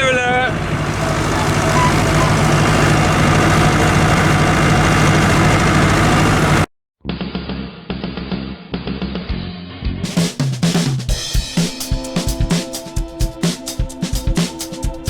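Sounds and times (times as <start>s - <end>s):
tractor engine running: 0.0s - 6.7s.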